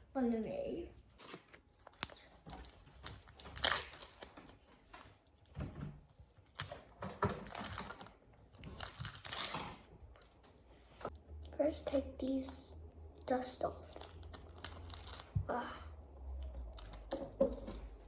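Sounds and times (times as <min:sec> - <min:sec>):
packaging rustling: 0:01.2 - 0:05.6.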